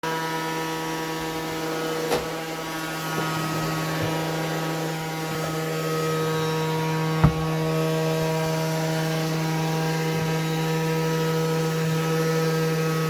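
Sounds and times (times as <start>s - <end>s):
sharp knocks: 7.2s - 7.8s.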